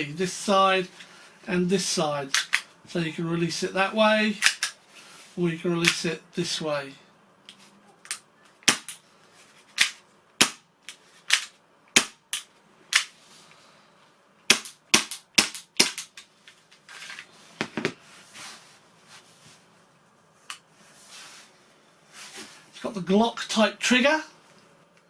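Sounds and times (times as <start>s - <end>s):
pistol mechanism clicking: 4.4s - 4.8s
soft rustling: 16.3s - 22.7s.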